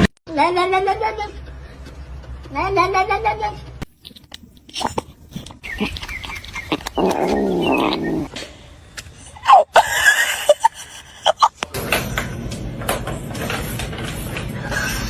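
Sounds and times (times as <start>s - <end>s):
pet animal wavering call: 5.6s - 8.3s.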